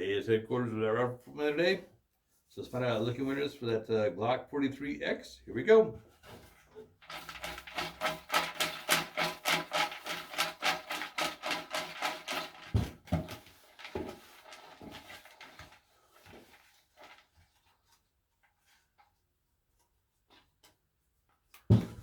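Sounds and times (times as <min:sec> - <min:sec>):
paper rustling: 0:06.4 - 0:18.0.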